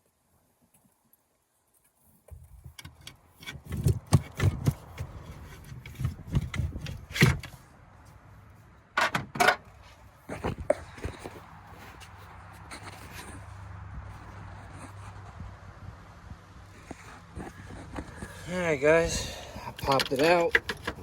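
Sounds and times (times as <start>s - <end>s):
tools clunking on metal parts: 9.0s - 9.7s, 19.1s - 21.0s.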